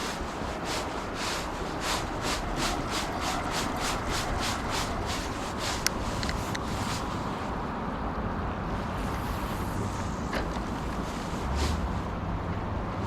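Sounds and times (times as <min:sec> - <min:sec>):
soft scuffs: 0:00.0 - 0:07.6, 0:10.4 - 0:12.1
wind buffeting microphone: 0:00.0 - 0:13.0.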